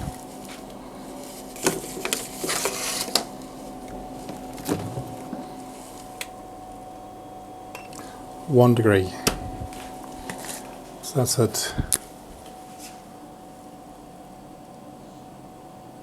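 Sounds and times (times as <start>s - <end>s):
steady electrical hum: 0.0s - 16.0s
handling knocks: 4.3s - 5.5s, 9.2s - 10.8s.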